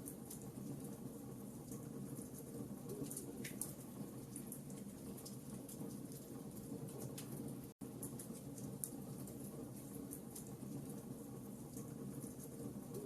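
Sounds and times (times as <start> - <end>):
low rumble of flames: 0.0 - 13.0
fire pops and snaps: 1.7 - 11.0.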